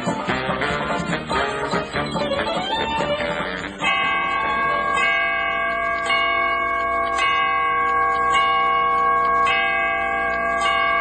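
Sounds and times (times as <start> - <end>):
bell tolling: 3.7 - 11.0.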